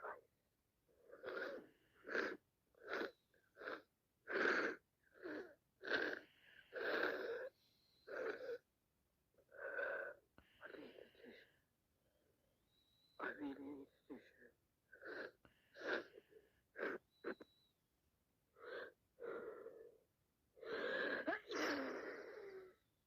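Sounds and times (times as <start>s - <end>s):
wheezy congested breaths and sniffs: 1.0s - 8.6s, 9.5s - 11.7s, 13.2s - 17.6s, 20.6s - 22.9s.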